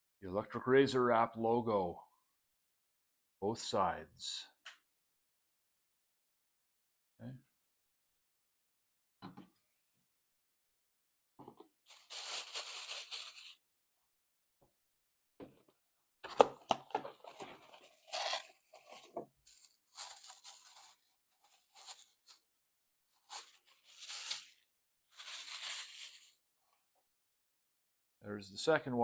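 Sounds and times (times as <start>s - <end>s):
cardboard packaging tearing and rustling: 11.9s - 13.6s, 17.2s - 22.4s, 23.3s - 26.3s.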